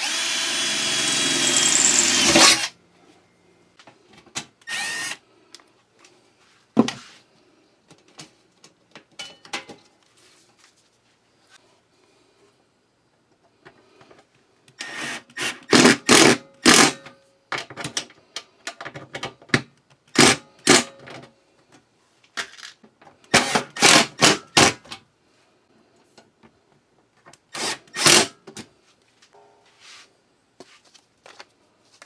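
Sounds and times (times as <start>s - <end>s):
cordless drill bursts: 0.0s - 2.7s, 4.7s - 5.2s, 14.8s - 16.8s, 27.5s - 28.3s.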